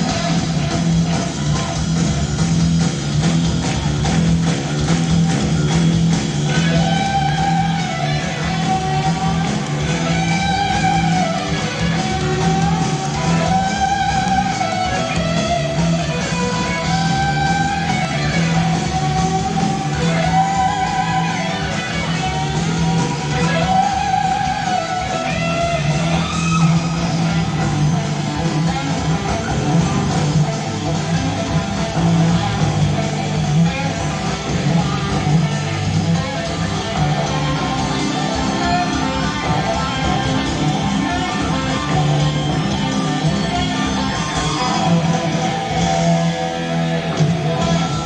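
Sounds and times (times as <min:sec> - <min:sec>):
bass pulse: 0:00.0 - 0:20.4
electric guitar melody: 0:00.0 - 0:48.0
rock band playing: 0:00.0 - 0:48.0.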